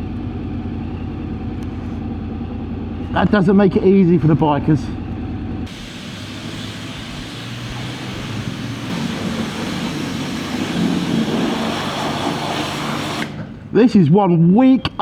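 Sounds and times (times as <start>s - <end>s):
water spray hissing: 5.7s - 13.5s.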